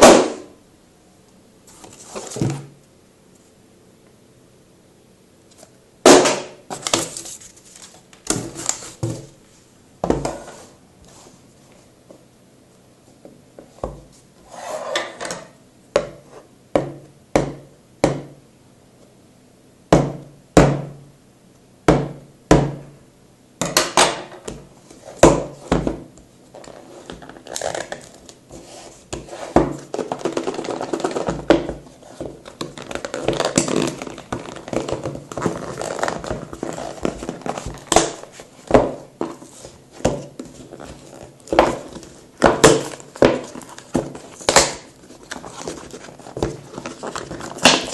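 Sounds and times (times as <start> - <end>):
packaging rustling and crinkling: 6.7 - 9.3, 26.5 - 47.9.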